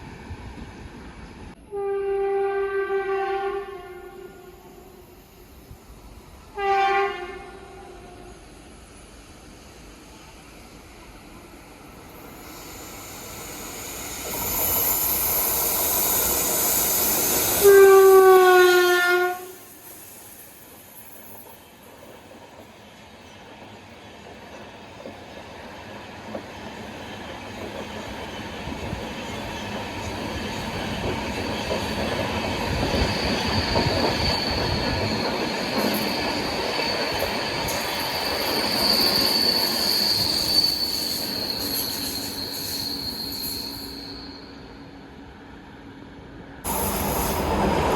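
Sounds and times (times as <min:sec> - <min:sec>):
locomotive horn blast: 0:01.7 - 0:04.5, 0:06.5 - 0:08.2, 0:17.6 - 0:19.6
train wheels rumbling on rails: 0:08.4 - 0:47.9
high-pitched wheel squeal: 0:32.7 - 0:44.7.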